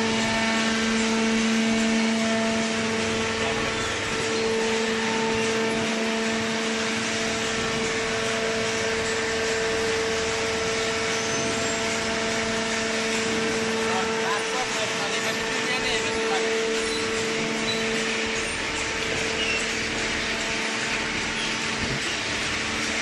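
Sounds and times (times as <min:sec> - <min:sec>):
hydraulic baler humming: 0:00.0 - 0:23.0.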